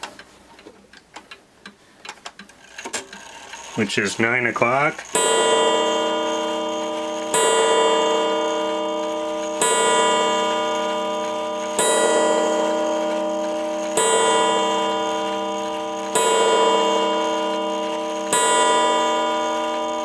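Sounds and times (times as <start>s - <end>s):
clock striking on a gong: 5.0s - 20.0s.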